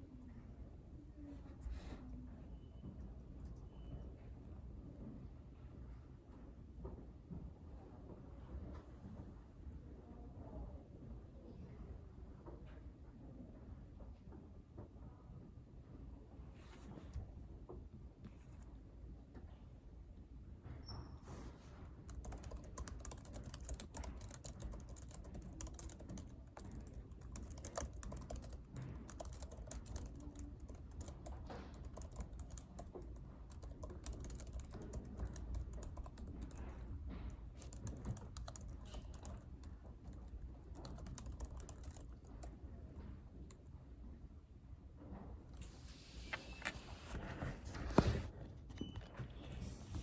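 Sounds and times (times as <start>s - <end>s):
typing on computer keyboard: 22.1s - 42.6s.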